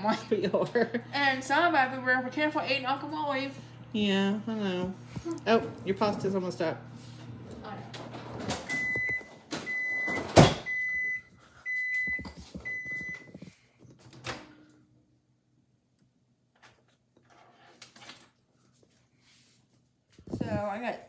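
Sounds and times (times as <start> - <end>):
microwave oven beeps: 7.8 - 13.5.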